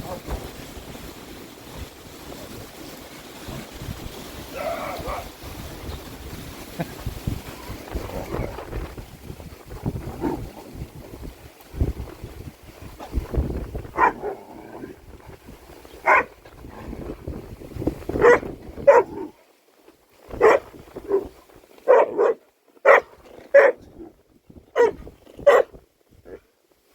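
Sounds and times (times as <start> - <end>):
wind rumbling on microphone: 0.0 - 26.5
dog barking: 14.0 - 14.4, 16.0 - 16.3, 18.2 - 19.3, 20.4 - 23.8, 24.8 - 25.7.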